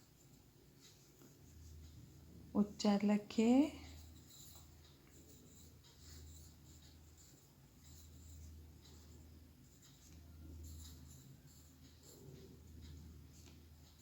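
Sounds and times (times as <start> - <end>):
pen scratching on paper: 3.8 - 14.0.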